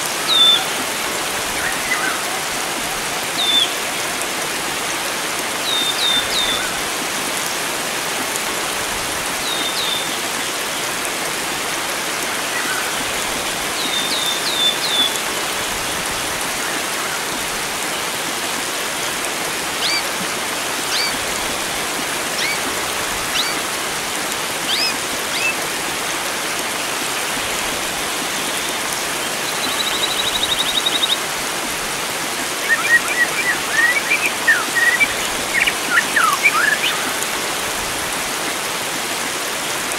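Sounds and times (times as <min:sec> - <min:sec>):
flowing water: 0:00.0 - 0:39.9
songbirds calling: 0:19.7 - 0:23.9, 0:24.6 - 0:25.7, 0:26.6 - 0:31.4, 0:32.5 - 0:37.6.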